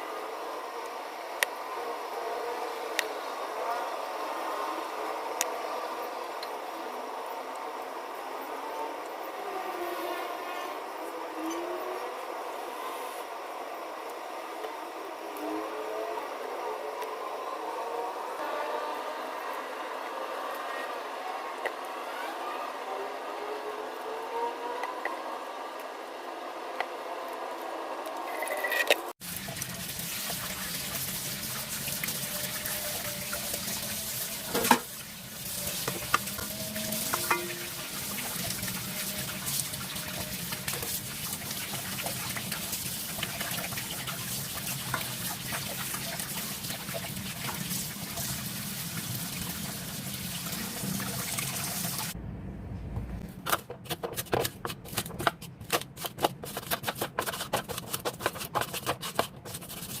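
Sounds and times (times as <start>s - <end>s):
tap water running into sink: 29.2s - 52.1s.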